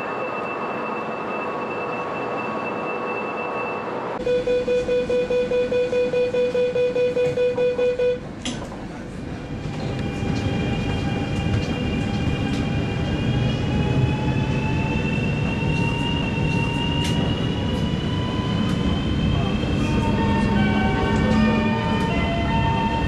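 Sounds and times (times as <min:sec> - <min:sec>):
low rumbling of train: 0:00.0 - 0:23.0
rapid electronic warning beeps: 0:00.2 - 0:08.2.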